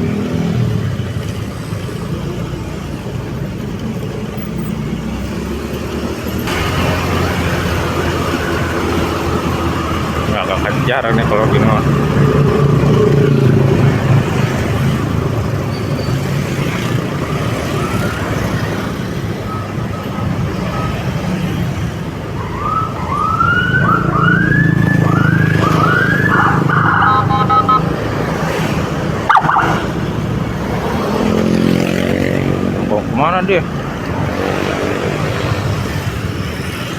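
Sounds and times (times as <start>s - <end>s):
vehicle engine and road noise: 0.0s - 36.9s
emergency siren yelps: 22.1s - 28.2s, 29.2s - 30.2s
multi-tone horn blast: 26.7s - 28.0s.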